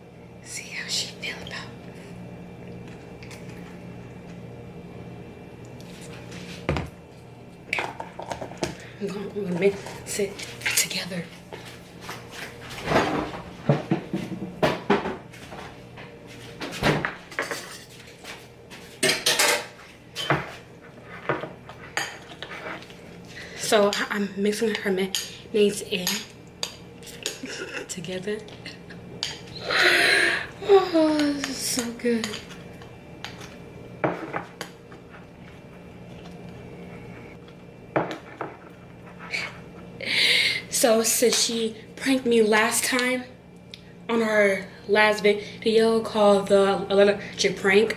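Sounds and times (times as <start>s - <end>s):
steady low hum: 0.0s - 47.9s
spoon scraping a bowl: 20.8s - 23.0s.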